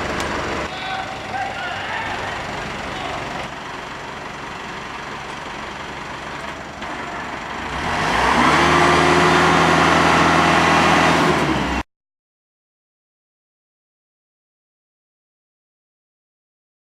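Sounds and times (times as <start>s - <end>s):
engine running: 0.0s - 11.8s.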